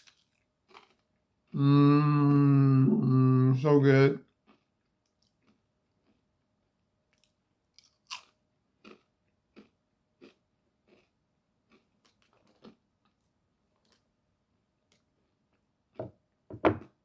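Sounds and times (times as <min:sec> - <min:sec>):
person chewing crunchy chips: 0:00.0 - 0:02.3, 0:04.3 - 0:06.3, 0:07.1 - 0:14.1.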